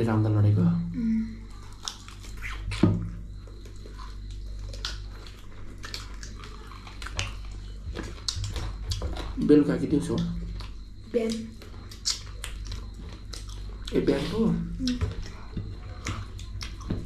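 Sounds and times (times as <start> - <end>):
steady low hum: 0.0 - 17.0
chewing and mouth smacks: 1.6 - 9.4, 10.2 - 17.0.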